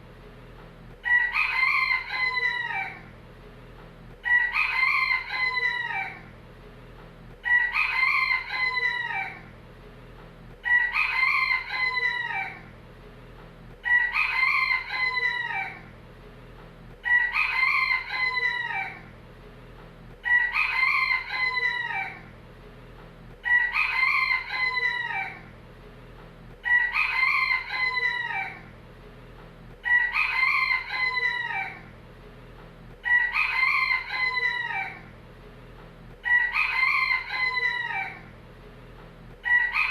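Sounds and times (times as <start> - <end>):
faint steady hum: 0.0 - 39.9
rooster crowing: 1.0 - 3.1, 4.2 - 6.3, 7.4 - 9.5, 10.6 - 12.7, 13.8 - 15.9, 17.0 - 19.1, 20.2 - 22.3, 23.4 - 25.5, 26.6 - 28.7, 29.8 - 31.9, 33.0 - 35.1, 36.2 - 38.3, 39.4 - 39.9.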